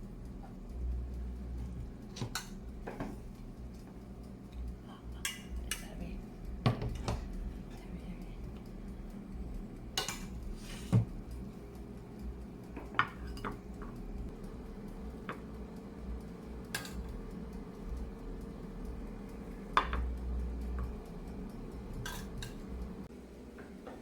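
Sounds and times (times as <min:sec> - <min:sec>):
low steady hum: 0:00.0 - 0:24.0
dishes and cutlery clinking: 0:02.0 - 0:03.3, 0:04.6 - 0:06.0, 0:06.6 - 0:07.9, 0:10.0 - 0:11.4, 0:12.6 - 0:14.0, 0:16.6 - 0:17.1, 0:19.6 - 0:21.0, 0:21.9 - 0:22.8.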